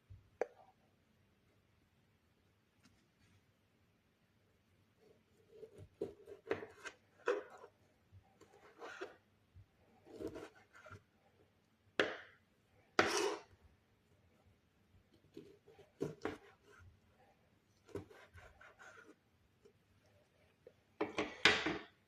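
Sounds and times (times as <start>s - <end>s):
knife scraping: 5.4s - 7.8s, 8.4s - 9.2s, 10.1s - 11.0s, 13.0s - 13.5s, 15.3s - 16.8s, 17.8s - 19.2s.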